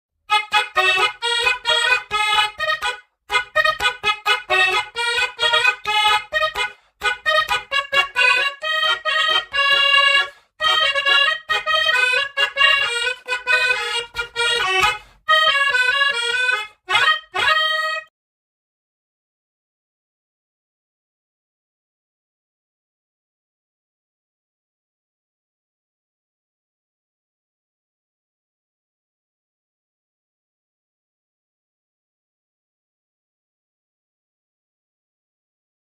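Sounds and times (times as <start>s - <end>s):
musical bus horn melody: 0.3s - 18.1s.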